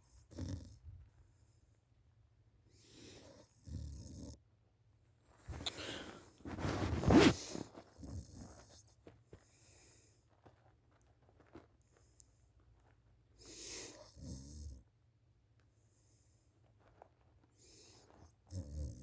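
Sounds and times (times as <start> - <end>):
soft breaths: 2.6 - 3.7, 5.3 - 14.2
loud snort: 6.6 - 8.3.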